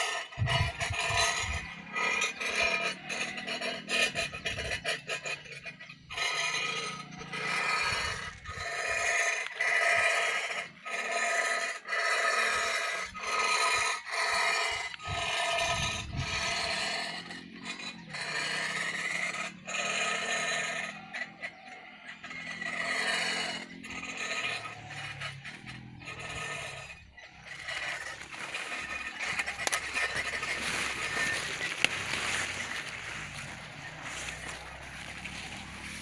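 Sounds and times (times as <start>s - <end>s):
scraping strokes with whine: 0.0s - 11.9s, 20.7s - 36.0s.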